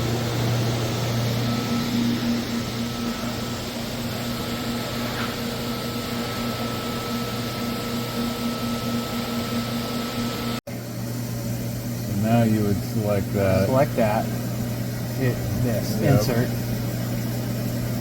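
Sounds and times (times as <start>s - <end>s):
machinery humming: 0.0s - 18.0s.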